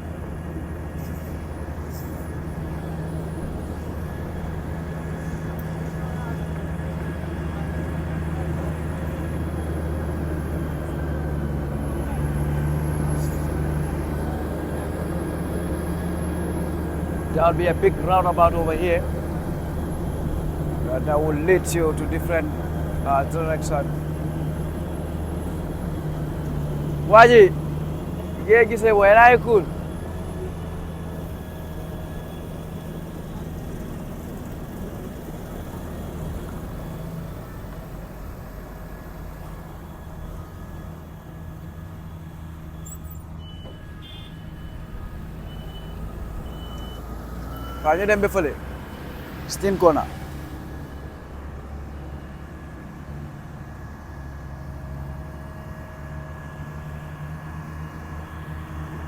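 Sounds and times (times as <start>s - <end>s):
vehicle engine running: 0.0s - 59.0s.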